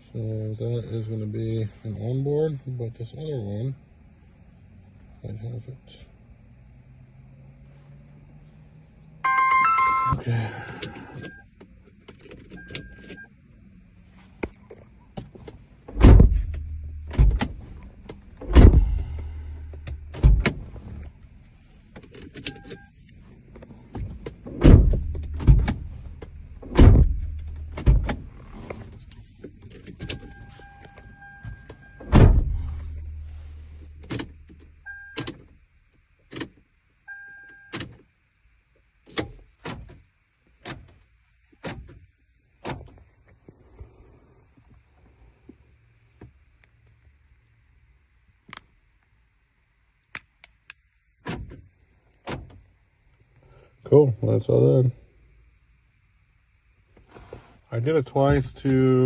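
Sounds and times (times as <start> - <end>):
two-tone electronic beeps: 9.2 - 10.3
car door and lock thunks: 15.1 - 21.2, 23.6 - 35.5, 41.6 - 42.0, 51.2 - 52.6
low hum: 15.7 - 35.1.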